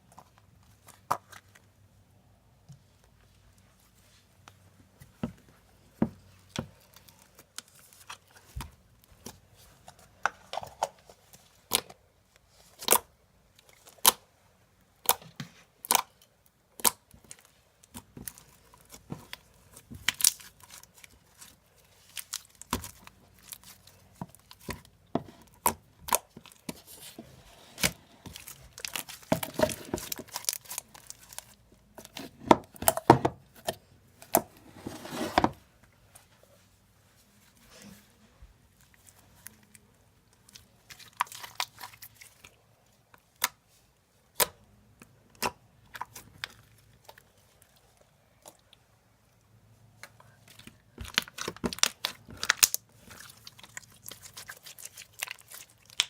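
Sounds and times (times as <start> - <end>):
slime squishing and popping: 51.0 - 56.0.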